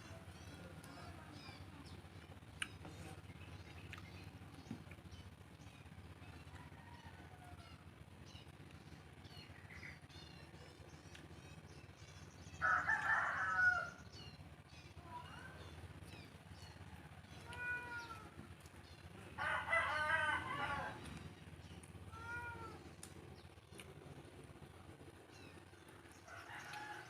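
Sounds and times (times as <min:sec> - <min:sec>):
faint rooster calls: 0:06.3 - 0:07.9, 0:12.6 - 0:14.1, 0:19.3 - 0:21.2, 0:26.2 - 0:27.0
rooster crowing: 0:06.5 - 0:07.8, 0:12.6 - 0:14.0, 0:19.4 - 0:21.1, 0:26.2 - 0:27.0.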